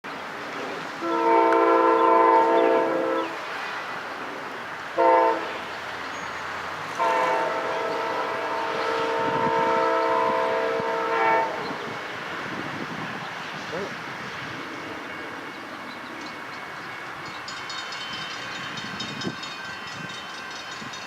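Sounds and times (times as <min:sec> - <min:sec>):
locomotive air horn blasts: 0:01.0 - 0:03.4, 0:05.0 - 0:05.6, 0:06.9 - 0:11.8.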